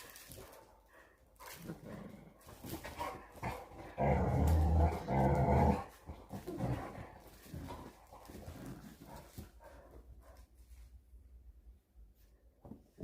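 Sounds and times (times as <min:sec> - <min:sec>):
dog growling: 0:01.4 - 0:09.4.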